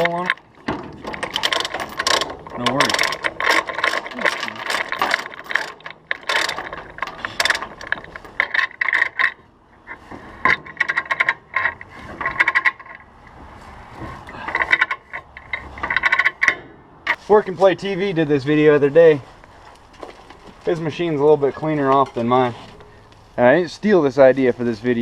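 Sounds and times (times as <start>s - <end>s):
ratchet binder pawl clicking: 0.0s - 13.1s.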